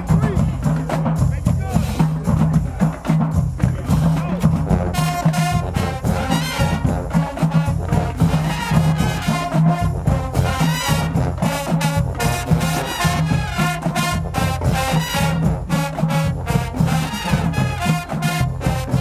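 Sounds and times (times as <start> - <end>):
marching band playing: 0.0 - 19.0.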